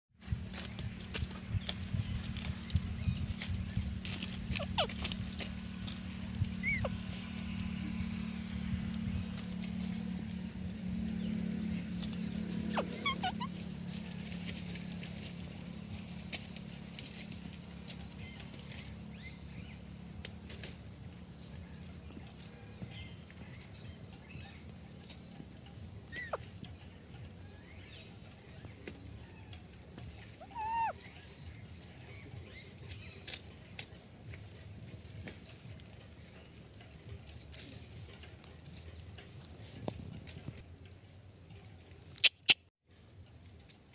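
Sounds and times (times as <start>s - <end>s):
parrot chirping and squawking: 4.5s - 5.1s, 6.6s - 7.0s, 12.6s - 13.6s, 26.1s - 26.4s, 30.4s - 31.0s.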